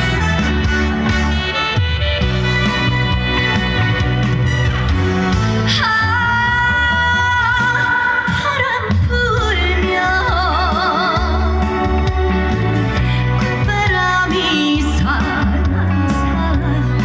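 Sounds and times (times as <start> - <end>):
backing track with bass beat: 0.0 - 17.0
woman singing with vibrato: 5.7 - 12.2, 13.5 - 17.0.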